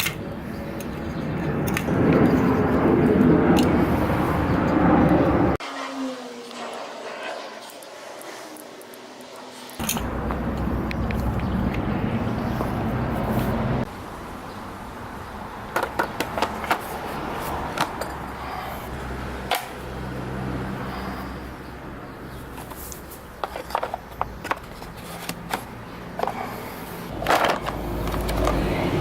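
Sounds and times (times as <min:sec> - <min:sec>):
hand tools clicking and knocking: 0:09.8 - 0:12.8, 0:15.7 - 0:18.7, 0:22.5 - 0:29.0.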